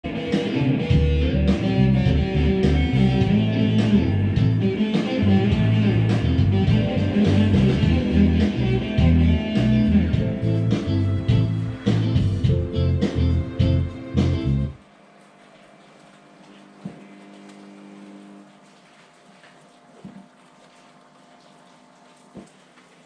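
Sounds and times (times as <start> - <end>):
guitar-led instrumental music: 0.0 - 14.8.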